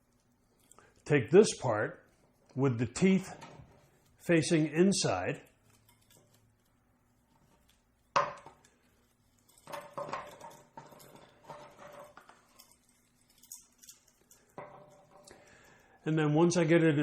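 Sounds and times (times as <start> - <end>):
small parts knocking and rattling: 5.4 - 16.0.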